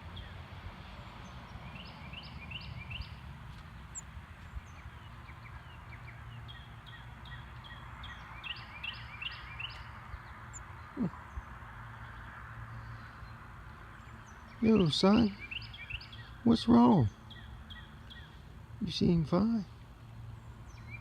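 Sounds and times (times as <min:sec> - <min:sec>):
songbirds whistling: 0:04.7 - 0:11.5, 0:14.1 - 0:16.4, 0:20.7 - 0:21.0.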